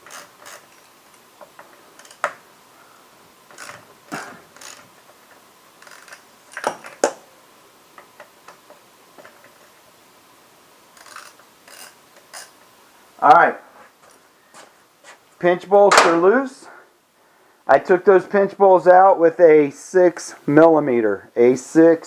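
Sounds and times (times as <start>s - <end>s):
ratchet clicks: 0.0s - 2.4s, 3.5s - 4.9s, 5.8s - 7.1s, 11.0s - 12.6s.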